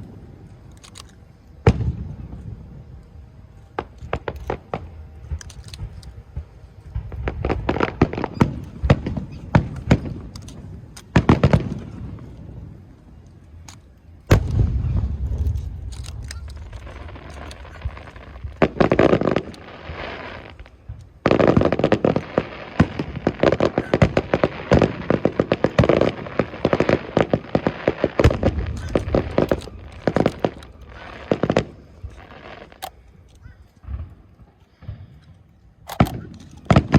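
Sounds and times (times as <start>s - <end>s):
fireworks crackling pops: 0.0s - 36.9s
firework boom with low rumble: 1.6s - 2.7s, 14.3s - 15.9s.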